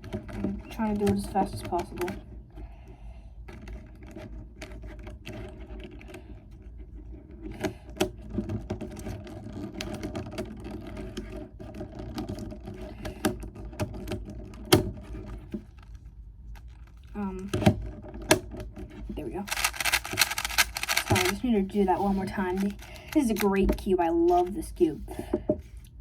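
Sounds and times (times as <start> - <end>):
plastic puzzle cube clicking: 19.4 - 21.4.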